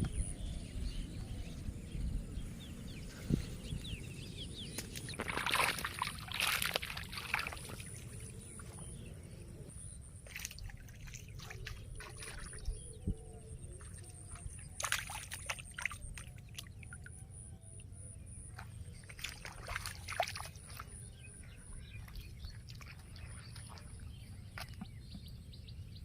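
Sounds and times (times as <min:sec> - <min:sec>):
water splashes: 0:04.6 - 0:09.0, 0:10.2 - 0:17.2, 0:18.5 - 0:25.1
shallow water trickling: 0:04.6 - 0:09.4, 0:10.2 - 0:12.9, 0:13.6 - 0:17.2, 0:18.5 - 0:25.2.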